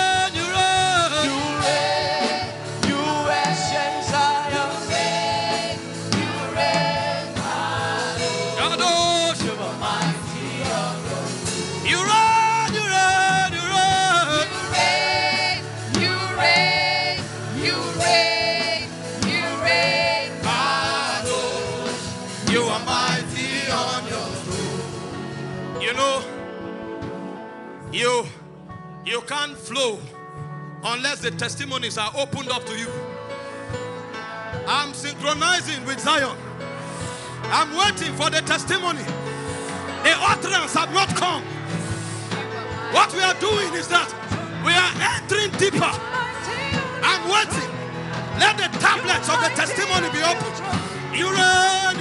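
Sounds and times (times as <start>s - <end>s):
instrumental backing: 0.0s - 52.0s
voices singing with vibrato: 0.5s - 25.5s, 41.7s - 52.0s.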